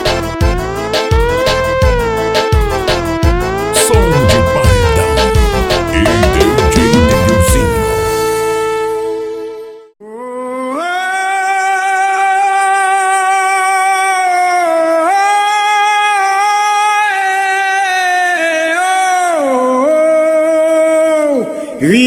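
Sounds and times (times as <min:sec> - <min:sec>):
person singing long held notes: 0:03.8 - 0:08.5, 0:10.0 - 0:13.3.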